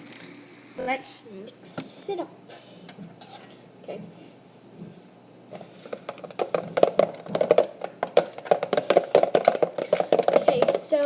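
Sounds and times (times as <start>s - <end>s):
utensil stirring cream in container: 5.8s - 11.0s.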